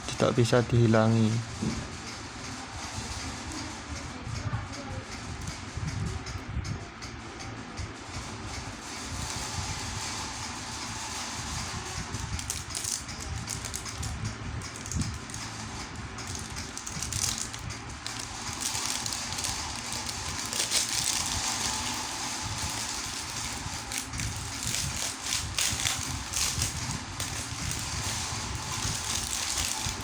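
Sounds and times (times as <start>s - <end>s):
steady low rumble: 0.0s - 30.0s
handling rustling: 14.7s - 30.0s.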